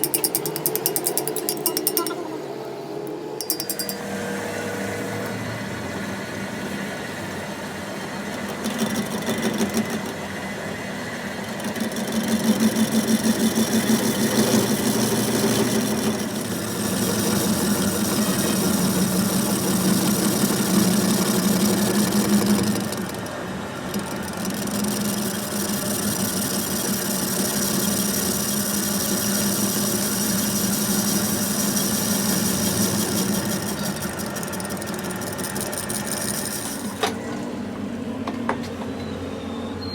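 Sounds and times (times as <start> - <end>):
machine motor humming and rattling: 0.0 - 39.4.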